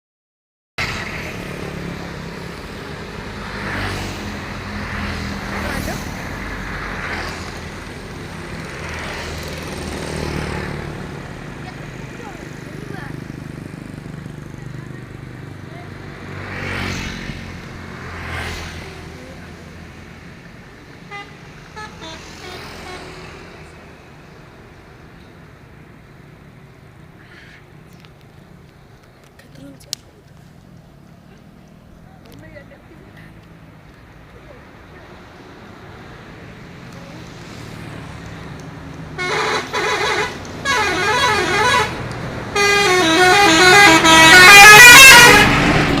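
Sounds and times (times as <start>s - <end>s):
heavy vehicles passing: 0.8s - 46.0s
multi-tone bus horn notes: 21.1s - 23.2s, 39.2s - 45.7s.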